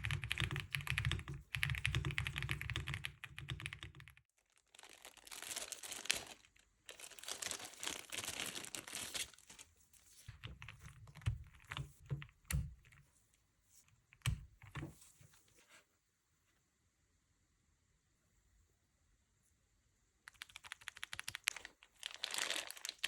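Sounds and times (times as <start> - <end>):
packaging crinkling: 4.5 - 9.7, 20.3 - 23.0.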